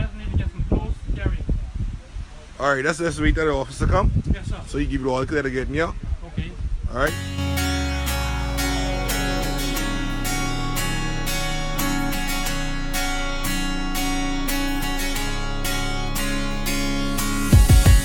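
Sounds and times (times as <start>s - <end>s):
strummed acoustic guitar music: 7.1s - 18.0s.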